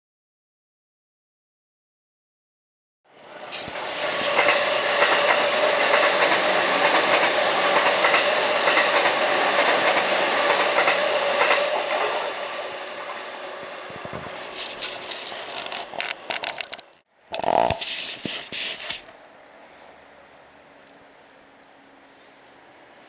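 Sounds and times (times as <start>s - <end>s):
train rushing noise: 3.1s - 17.0s
train wheels clattering over rail joints: 3.5s - 12.4s, 13.8s - 16.9s.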